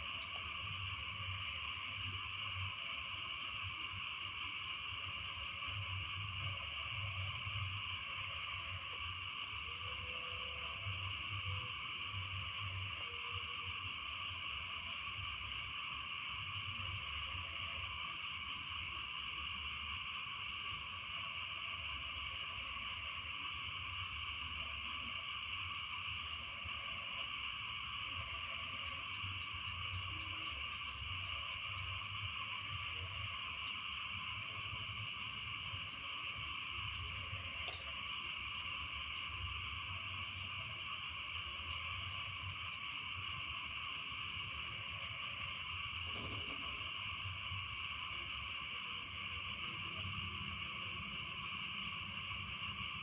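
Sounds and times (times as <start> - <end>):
frogs trilling: 0.0 - 53.0
repeated frog calls: 25.2 - 53.0.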